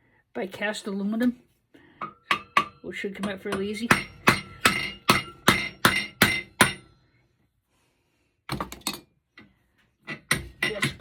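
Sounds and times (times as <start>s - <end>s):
hammer striking metal: 2.0s - 6.9s.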